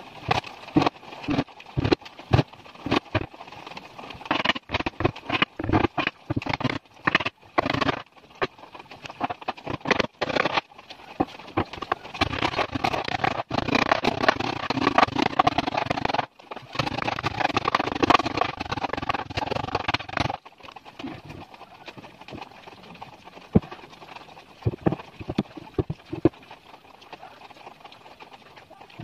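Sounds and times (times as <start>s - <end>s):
knocks and scrapes on wood: 0.3s - 3.3s, 4.3s - 10.6s, 24.6s - 26.4s.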